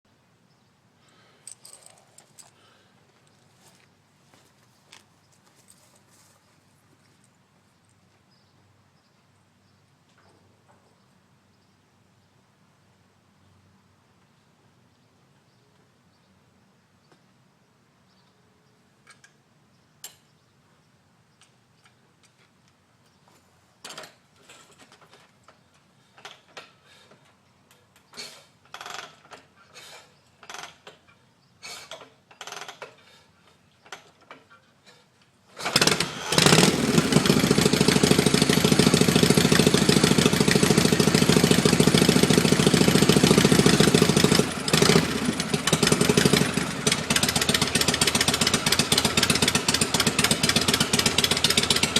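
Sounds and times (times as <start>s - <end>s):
motorcycle engine running: 35.7s - 51.9s.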